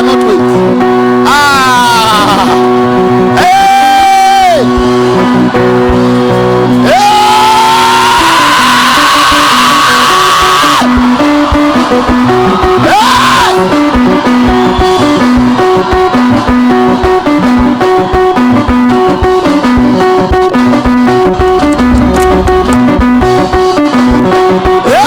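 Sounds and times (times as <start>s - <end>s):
plucked guitar riff: 4.6s - 6.9s, 13.6s - 25.0s
live band music: 13.7s - 25.0s.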